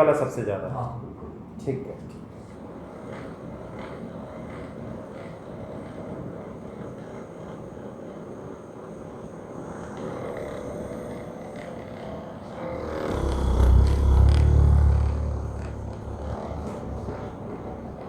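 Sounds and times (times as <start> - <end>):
faint multi-tone hum: 6.8 - 18.0
low droning background noise: 9.2 - 18.0.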